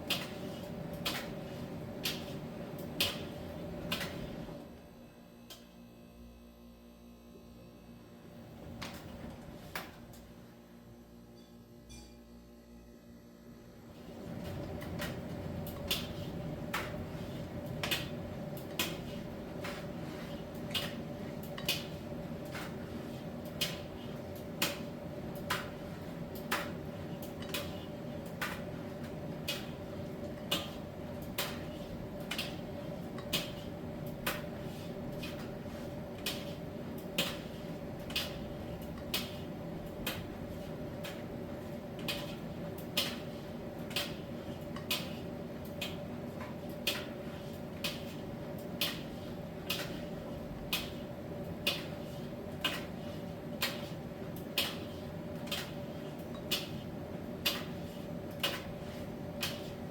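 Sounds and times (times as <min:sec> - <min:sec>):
dryer humming: 0:13.8 - 0:59.9.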